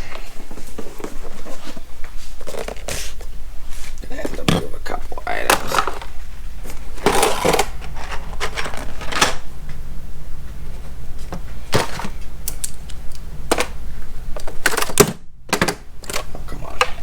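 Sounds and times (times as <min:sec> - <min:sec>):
packaging rustling: 0:05.2 - 0:09.5, 0:11.2 - 0:15.0
boxes knocking when set down: 0:11.2 - 0:12.2.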